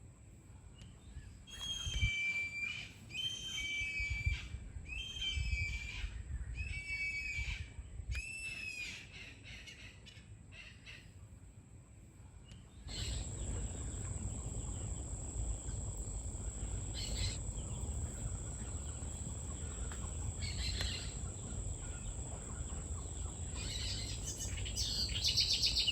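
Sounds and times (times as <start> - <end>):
bird calls: 12.9 - 25.9
insect trilling: 12.9 - 25.9
low steady rumble: 12.9 - 25.9.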